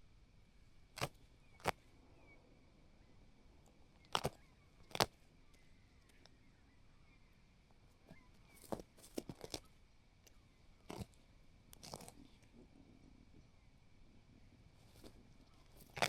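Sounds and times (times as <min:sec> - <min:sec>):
carcass cracking and snapping: 0:01.0 - 0:01.8, 0:04.0 - 0:05.2, 0:08.6 - 0:09.7, 0:10.9 - 0:12.2, 0:15.8 - 0:16.0.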